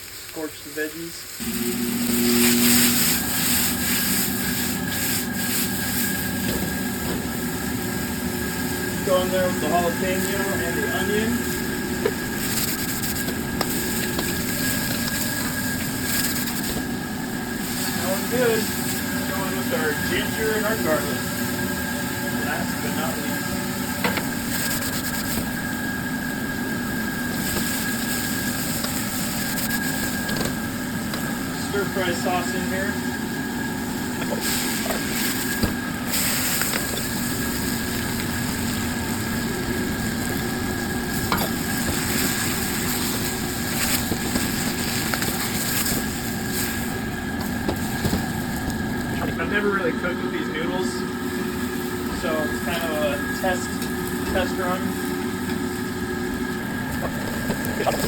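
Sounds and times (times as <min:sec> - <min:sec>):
vegetables sizzling in a wok: 0:00.0 - 0:49.4, 0:51.2 - 0:58.0
stirring and scraping in a pan: 0:02.2 - 0:19.2, 0:23.9 - 0:31.7, 0:33.9 - 0:49.3.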